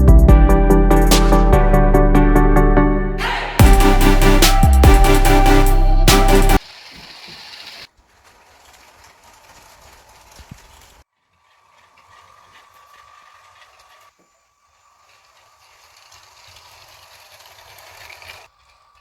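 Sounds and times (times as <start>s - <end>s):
loud electronic music: 0.0s - 6.6s
toy train motor whirring: 6.6s - 19.0s.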